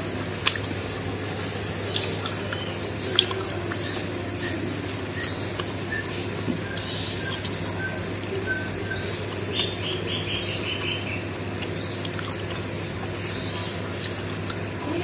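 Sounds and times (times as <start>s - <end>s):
steady low hum: 0.0s - 15.0s
chewing and wet mouth sounds: 0.2s - 15.0s
bird chirping: 3.7s - 14.2s.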